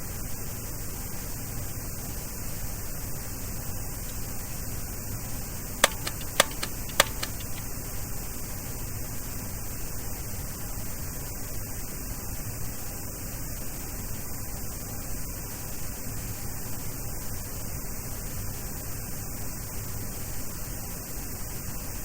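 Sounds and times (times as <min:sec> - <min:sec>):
steady cockpit hiss: 0:00.0 - 0:22.0
sharp clicks: 0:05.8 - 0:07.7.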